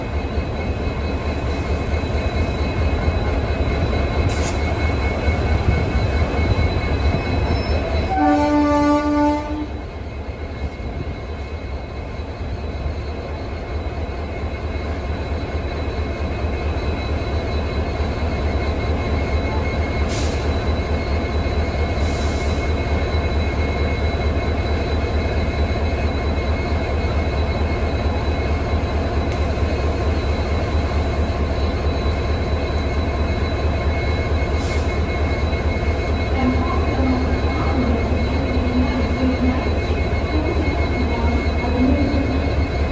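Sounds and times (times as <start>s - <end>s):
locomotive engine humming: 0.0s - 42.9s
locomotive horn blast: 8.0s - 9.8s.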